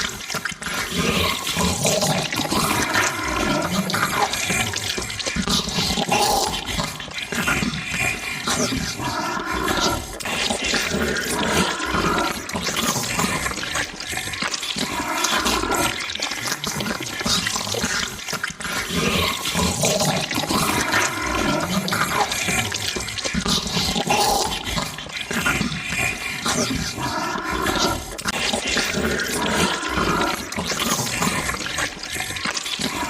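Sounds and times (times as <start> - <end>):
wet slurping and squelching: 0.0 - 33.0.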